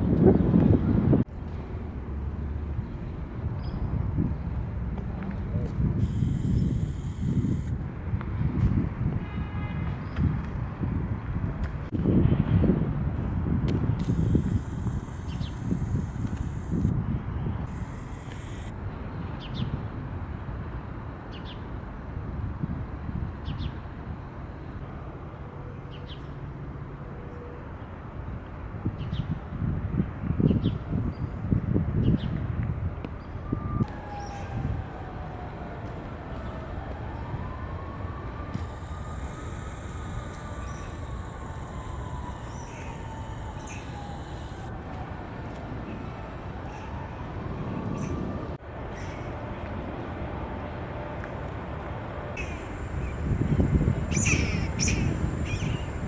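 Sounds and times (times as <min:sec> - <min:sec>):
siren wailing: 0:06.0 - 0:07.8, 0:14.0 - 0:16.9, 0:17.7 - 0:18.7, 0:33.5 - 0:45.6, 0:52.4 - 0:56.0
bird chirping: 0:38.6 - 0:44.7, 0:52.4 - 0:56.0.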